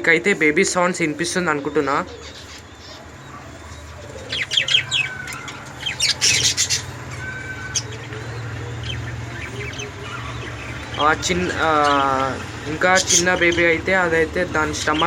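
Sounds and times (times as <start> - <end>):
budgerigars chirping and squawking: 0.0 - 15.0.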